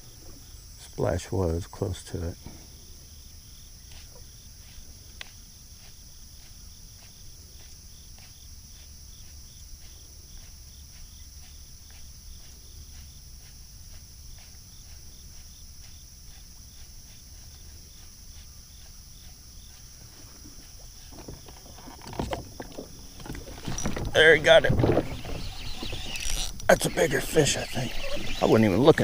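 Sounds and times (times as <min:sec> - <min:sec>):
insects buzzing: 0:00.0 - 0:29.0
low rumble of wind or water: 0:20.0 - 0:29.0.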